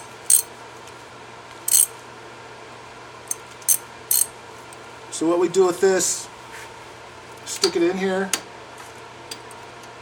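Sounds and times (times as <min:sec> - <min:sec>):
metallic socket clinks: 0:00.0 - 0:00.5, 0:01.7 - 0:01.9, 0:03.3 - 0:04.3.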